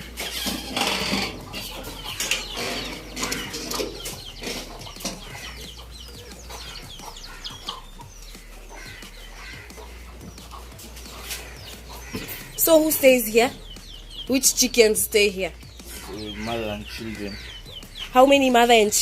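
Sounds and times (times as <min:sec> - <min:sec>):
knocks and rustling: 0:00.0 - 0:08.4, 0:09.0 - 0:12.5
chickens clucking: 0:00.0 - 0:19.0
high falling chirps: 0:00.0 - 0:19.0.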